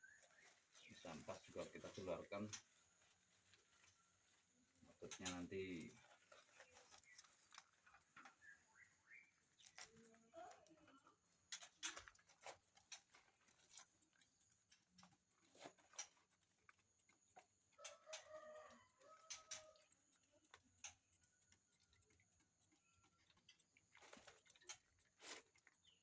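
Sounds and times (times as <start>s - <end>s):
faint clicks and taps: 0.1s - 26.0s
bird calling: 8.2s - 10.1s.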